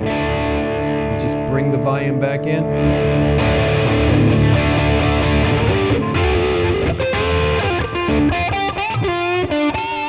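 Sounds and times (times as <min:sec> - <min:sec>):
distorted electric guitar: 0:00.0 - 0:10.0.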